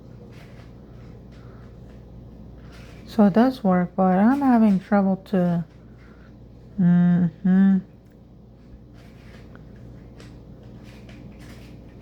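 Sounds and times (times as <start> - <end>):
person humming: 6.8 - 8.0.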